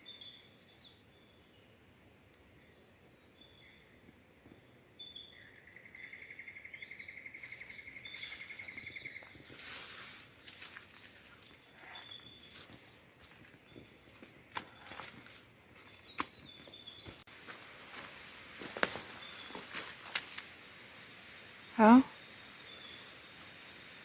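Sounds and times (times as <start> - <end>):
light crackles: 7.4 - 21.6.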